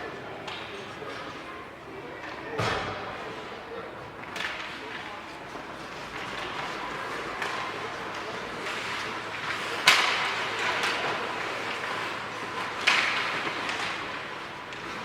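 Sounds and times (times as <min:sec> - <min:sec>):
spectator chatter: 0:00.0 - 0:15.0
hockey sticks knocking puck: 0:04.2 - 0:15.0.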